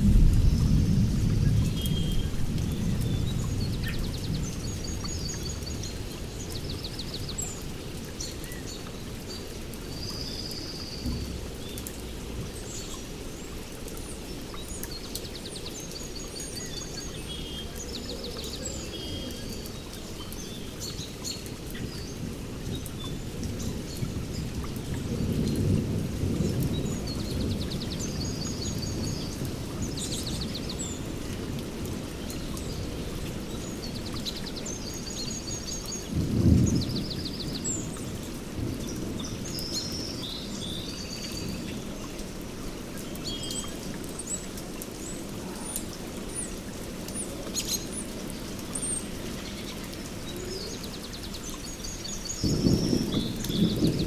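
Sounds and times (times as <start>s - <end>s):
low rolling thunder: 0.0s - 6.0s, 22.3s - 30.6s, 36.0s - 39.4s, 52.4s - 54.0s
rain falling: 0.0s - 54.0s.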